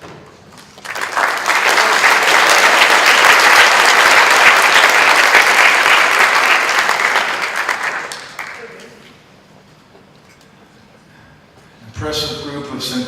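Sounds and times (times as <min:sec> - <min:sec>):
audience applauding: 0:00.6 - 0:09.0.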